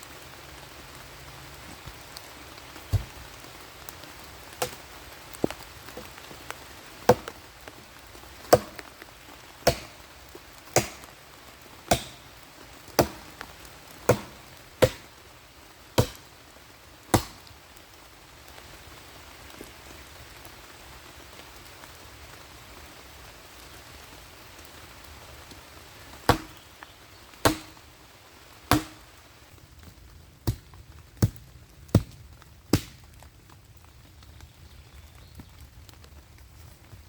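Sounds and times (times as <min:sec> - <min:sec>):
axe chopping wood: 0:02.9 - 0:03.4, 0:04.6 - 0:06.2, 0:07.1 - 0:07.4, 0:08.5 - 0:09.0, 0:09.6 - 0:10.1, 0:10.7 - 0:11.2, 0:11.9 - 0:15.2, 0:16.0 - 0:16.3, 0:17.1 - 0:17.5, 0:26.3 - 0:26.6, 0:27.4 - 0:27.8, 0:28.7 - 0:29.1, 0:30.4 - 0:33.1.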